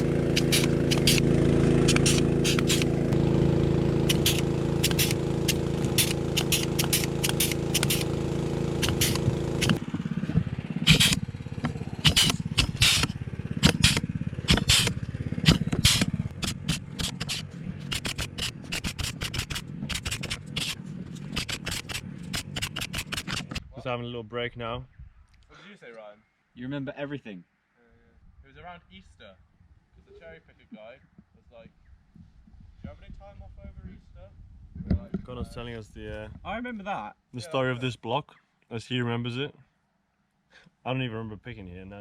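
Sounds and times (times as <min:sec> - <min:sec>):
pneumatic snips snapping: 0:00.0 - 0:03.2, 0:04.0 - 0:08.2, 0:08.8 - 0:09.8, 0:10.8 - 0:23.6
small petrol engine running: 0:00.0 - 0:23.6.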